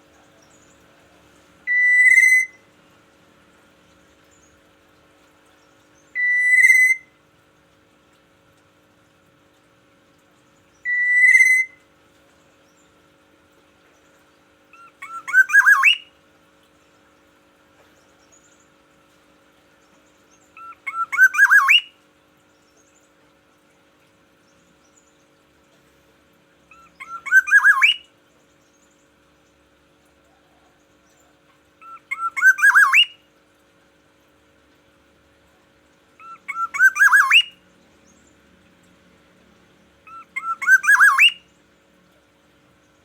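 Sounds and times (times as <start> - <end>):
oriole calling: 1.6 - 2.7, 6.1 - 7.1, 10.8 - 11.8, 14.7 - 16.1, 20.6 - 22.0, 26.7 - 28.1, 31.8 - 33.2, 36.2 - 37.6, 40.0 - 41.5.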